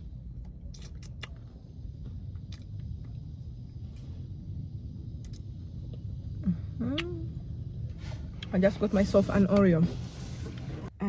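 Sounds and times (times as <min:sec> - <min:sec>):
low rumble inside car: 0:00.0 - 0:11.0
slurping and lip smacks: 0:00.7 - 0:01.5.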